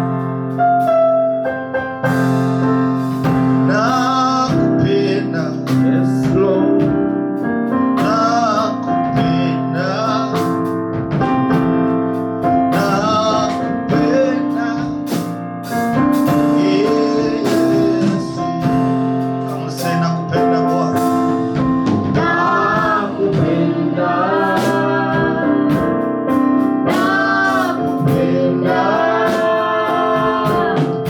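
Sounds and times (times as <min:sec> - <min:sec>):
held keyboard chords: 0:00.0 - 0:31.0
person singing: 0:03.6 - 0:07.2, 0:08.0 - 0:10.8, 0:12.5 - 0:15.4, 0:16.2 - 0:18.8, 0:19.4 - 0:31.0.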